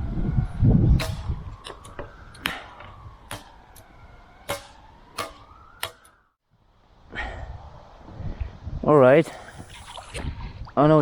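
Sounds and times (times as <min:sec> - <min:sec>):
distant ambulance siren wailing: 0:00.0 - 0:06.4.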